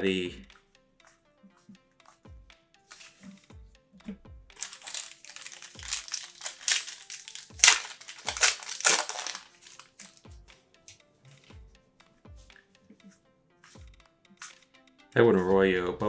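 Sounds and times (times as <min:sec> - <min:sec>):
foil wrapper crinkling and tearing: 0:04.6 - 0:10.2
background music with low beat: 0:13.6 - 0:14.2.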